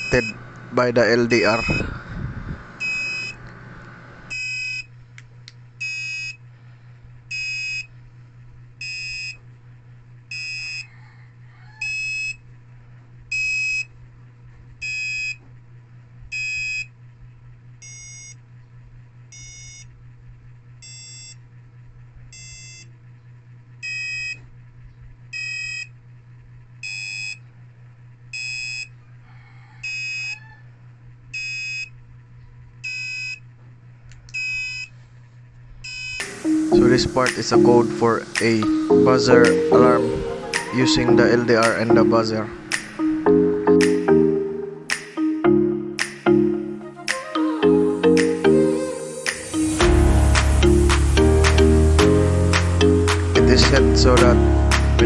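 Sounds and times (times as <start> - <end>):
buzzer beeping: 0.0 - 0.4, 17.8 - 18.4, 19.4 - 19.9
steady low hum: 0.0 - 11.5, 30.8 - 55.0.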